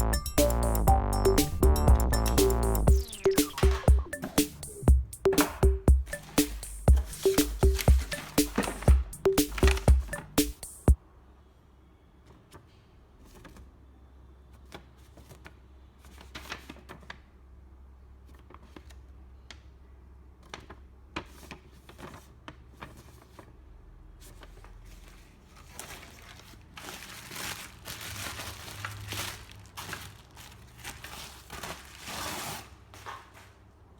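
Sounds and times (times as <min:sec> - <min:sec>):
plastic crinkling and rustling: 0:24.2 - 0:33.9.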